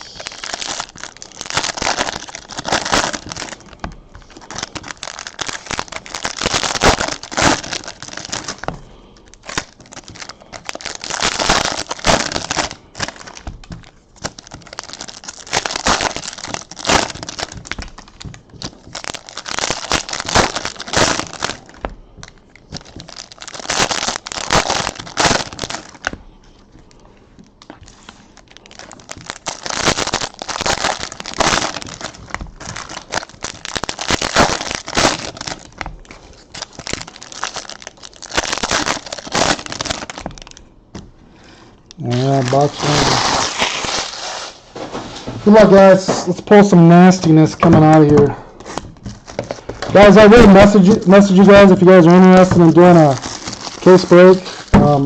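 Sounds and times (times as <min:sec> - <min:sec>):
plastic wrapping crinkling: 0:00.0 - 0:55.0.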